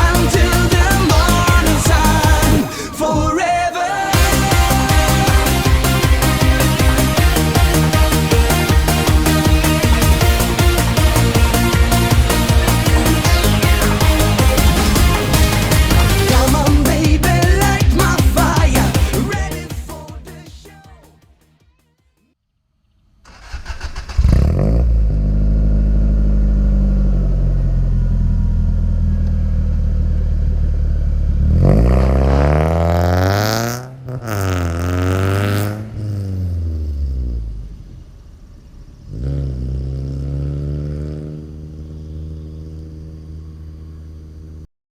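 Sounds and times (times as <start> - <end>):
car engine idling and revving: 0.0 - 2.9, 4.1 - 20.4, 23.3 - 44.7
engine cranking on starter: 23.2 - 25.3.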